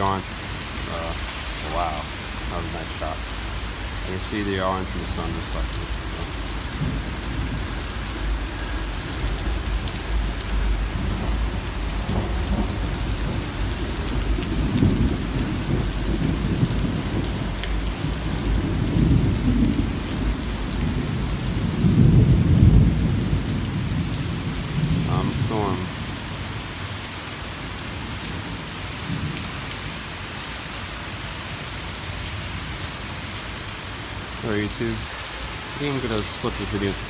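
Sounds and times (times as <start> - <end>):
thunder rumbling: 0.0 - 26.0
steady rain falling: 0.0 - 37.0.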